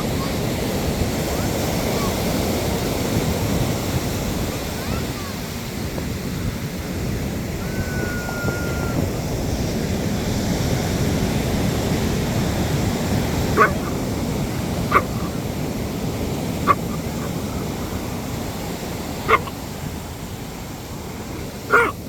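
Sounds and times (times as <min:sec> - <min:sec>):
surf washing: 0:00.0 - 0:22.0
dog barking: 0:13.3 - 0:18.2, 0:19.2 - 0:19.7, 0:21.6 - 0:22.0.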